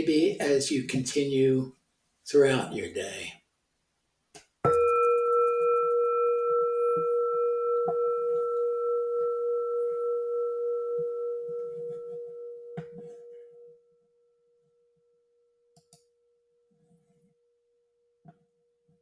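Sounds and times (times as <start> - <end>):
singing bowl ringing: 4.7 - 13.9.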